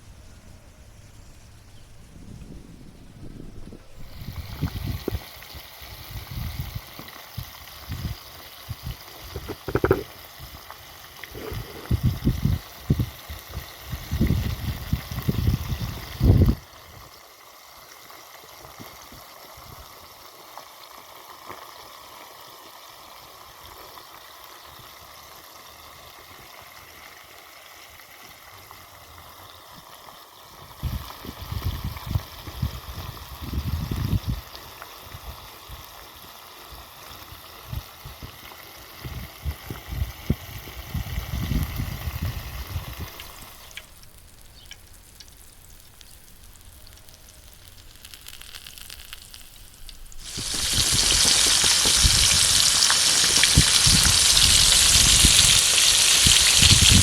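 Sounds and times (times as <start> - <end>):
wind buffeting microphone: 0.0 - 10.6, 11.3 - 16.6, 30.8 - 34.5, 39.0 - 43.5, 50.2 - 57.0
rushing water: 50.2 - 57.0.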